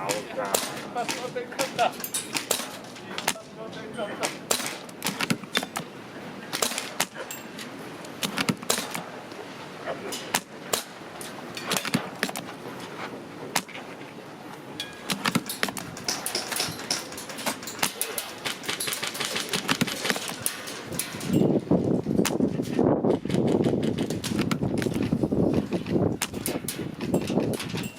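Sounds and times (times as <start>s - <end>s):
airsoft guns firing: 4.2s - 5.9s, 6.5s - 7.2s, 17.4s - 21.1s
wind on microphone: 19.6s - 27.9s.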